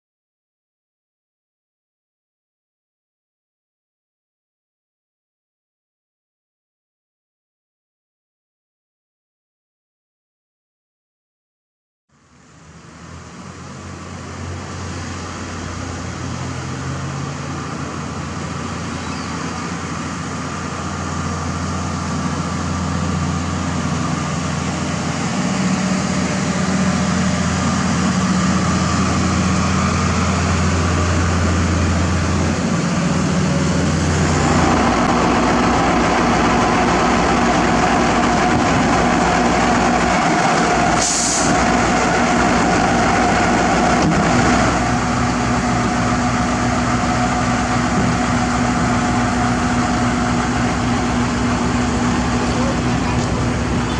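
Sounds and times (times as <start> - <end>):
heavy diesel machinery engine drone: 12.1 - 53.9
short high hiss: 41.0 - 41.6.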